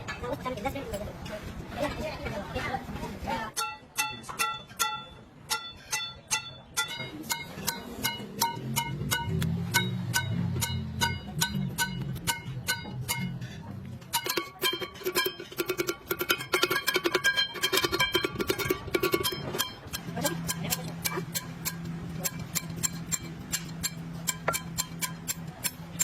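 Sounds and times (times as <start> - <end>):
plucked string music: 3.4 - 26.0
low steady hum: 6.3 - 26.0.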